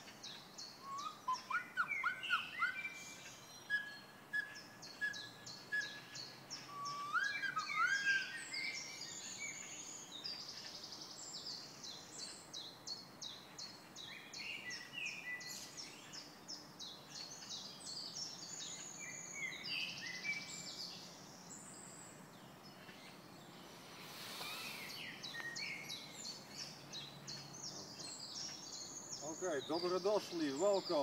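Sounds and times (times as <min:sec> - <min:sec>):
songbirds chirping: 0:00.0 - 0:31.0
brief rush of noise: 0:23.7 - 0:25.1.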